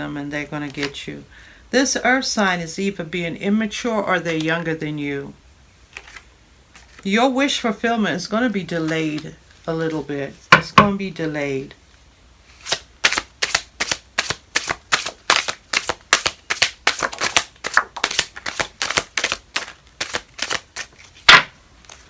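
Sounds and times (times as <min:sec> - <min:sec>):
cards being shuffled: 0:00.6 - 0:01.0, 0:05.9 - 0:07.1, 0:12.5 - 0:22.0.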